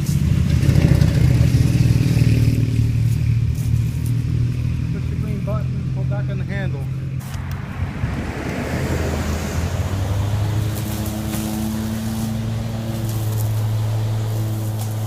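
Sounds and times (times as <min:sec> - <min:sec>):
rushing noise of grass cutting: 0:00.0 - 0:05.4, 0:07.0 - 0:15.0
lawn mower humming: 0:00.0 - 0:15.0
debris ticking against mower deck: 0:10.7 - 0:15.0.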